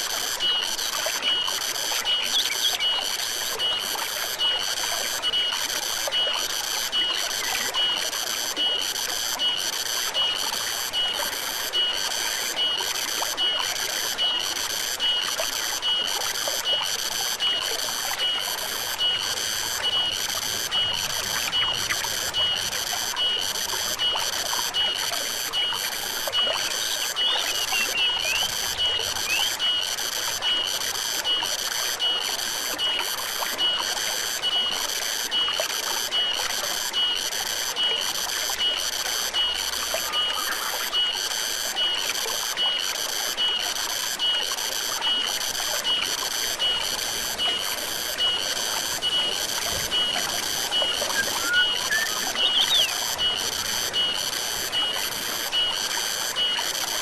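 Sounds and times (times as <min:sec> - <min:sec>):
insects pulsing: 0:00.0 - 0:57.0
stream trickling: 0:00.0 - 0:57.0
bird chirps: 0:50.9 - 0:53.0.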